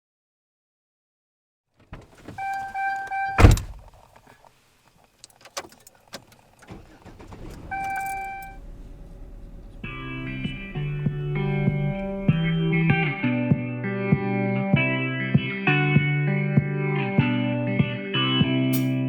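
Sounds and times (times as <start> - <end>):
car door slamming: 1.9 - 4.0, 6.6 - 13.2
car warning chime beeps: 2.2 - 3.8, 7.1 - 13.0
low engine rumble: 5.9 - 13.3.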